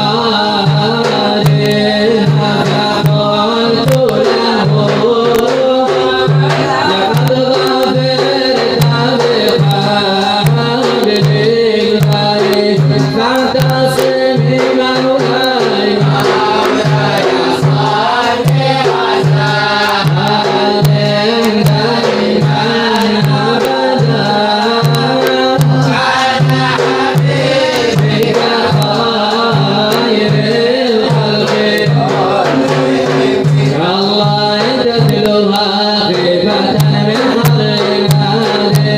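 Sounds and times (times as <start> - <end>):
steady drum beat: 0.0 - 38.9
voice-like melody: 6.2 - 7.9.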